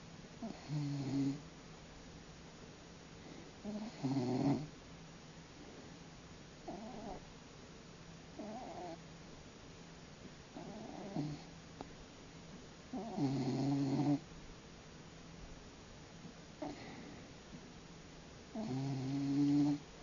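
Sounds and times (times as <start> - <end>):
cat snoring: 0.4 - 1.4, 3.6 - 4.7, 6.6 - 7.2, 8.4 - 9.0, 10.6 - 11.5, 12.9 - 14.2, 16.6 - 17.1, 18.5 - 19.8.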